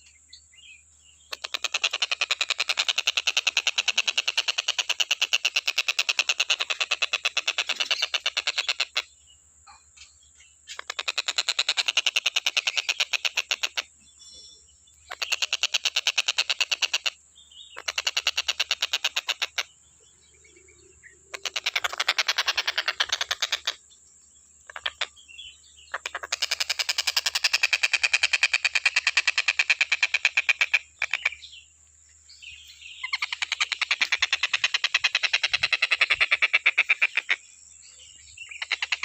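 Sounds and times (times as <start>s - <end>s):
kingfisher chattering trills: 1.3s - 9.1s, 10.7s - 13.9s, 15.0s - 19.7s, 20.4s - 23.8s, 24.6s - 25.3s, 25.9s - 31.4s, 33.0s - 37.4s, 38.5s - 39.0s.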